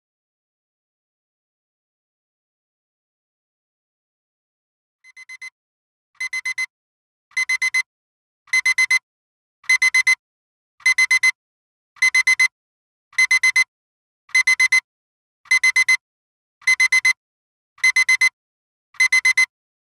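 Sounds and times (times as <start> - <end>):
timer alarm beeping: 5.1 - 5.5, 6.2 - 6.7, 7.4 - 7.9, 8.5 - 9.0, 9.7 - 10.2, 10.8 - 11.4, 12.0 - 12.5, 13.2 - 13.7, 14.3 - 14.8, 15.5 - 16.0, 16.7 - 17.2, 17.8 - 18.4, 19.0 - 19.5.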